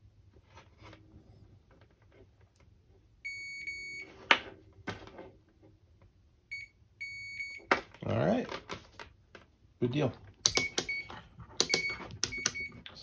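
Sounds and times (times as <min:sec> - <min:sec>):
multimeter high beep: 0:06.5 - 0:07.6, 0:10.5 - 0:12.8
sharp probe clicks: 0:10.4 - 0:11.0, 0:11.6 - 0:12.6.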